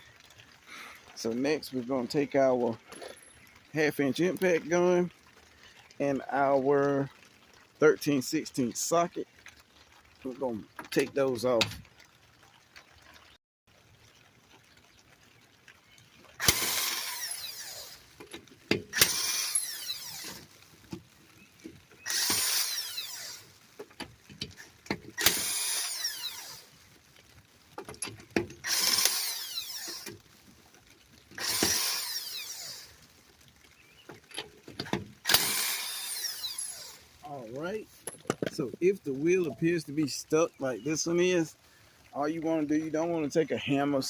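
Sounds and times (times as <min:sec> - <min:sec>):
impact gun removing lug nuts: 0:16.4 - 0:17.5, 0:18.2 - 0:20.5, 0:22.1 - 0:23.1, 0:23.9 - 0:26.2, 0:31.4 - 0:32.2, 0:34.7 - 0:36.7.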